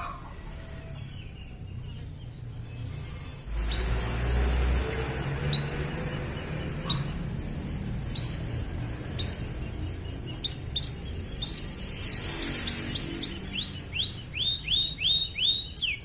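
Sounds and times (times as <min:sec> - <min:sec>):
canary chirping: 0:00.9 - 0:16.0.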